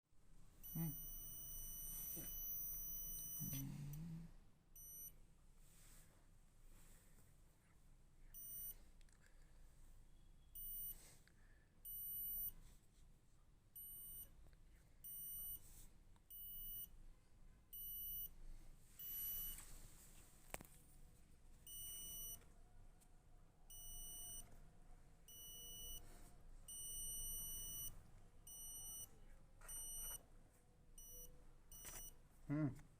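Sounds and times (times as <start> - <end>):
security alarm beeping: 0.6 - 4.0, 4.8 - 5.1, 8.4 - 8.8, 10.6 - 11.0, 11.8 - 12.5, 13.8 - 14.3, 15.0 - 15.6, 16.3 - 16.9, 17.7 - 18.3, 19.0 - 19.6, 21.7 - 22.4, 23.7 - 24.5, 25.3 - 26.0, 26.7 - 30.2, 31.0 - 32.1.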